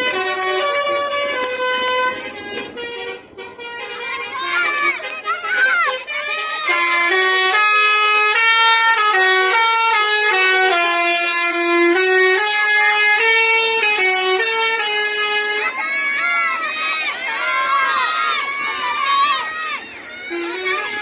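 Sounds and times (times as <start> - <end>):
multi-note air horn tune: 0.0 - 15.8, 20.3 - 21.0.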